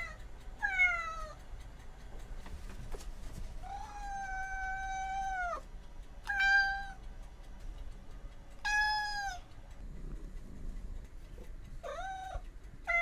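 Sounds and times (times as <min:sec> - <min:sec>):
cat meowing: 0:00.0 - 0:01.4, 0:03.6 - 0:05.6, 0:06.3 - 0:07.0, 0:08.6 - 0:09.4, 0:11.8 - 0:13.0.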